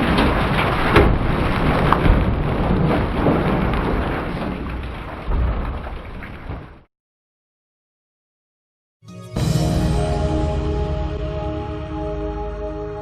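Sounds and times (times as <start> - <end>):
thunder-like booms: 0.0 - 6.8.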